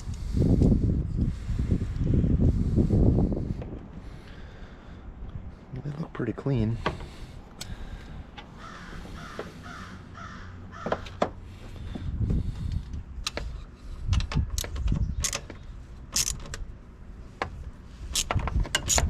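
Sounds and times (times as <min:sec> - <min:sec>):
metal tools clicking and clanking: 0:13.2 - 0:16.6, 0:18.1 - 0:19.0.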